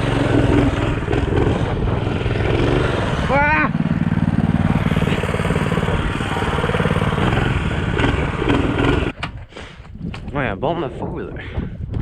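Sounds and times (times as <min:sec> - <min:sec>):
mini bike engine running: 0:00.0 - 0:09.2.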